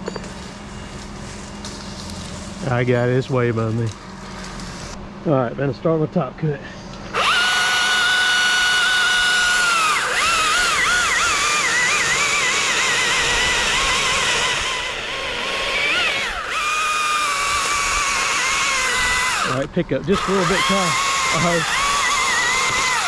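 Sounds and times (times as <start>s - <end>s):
chainsaw cutting wood: 7.1s - 23.0s.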